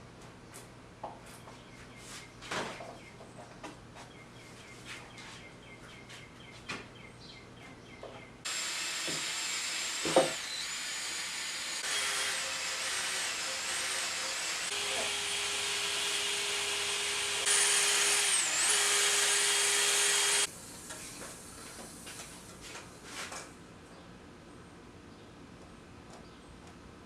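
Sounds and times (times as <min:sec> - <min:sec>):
power tool whining: 0:08.5 - 0:20.5.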